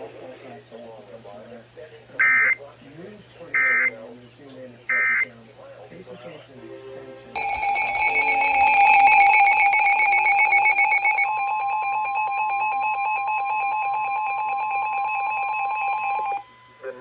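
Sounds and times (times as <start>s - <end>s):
pulsing electronic alert tones: 7.4s - 16.4s
high beep: 7.4s - 16.5s
steady warning alarm tone: 7.4s - 17.0s.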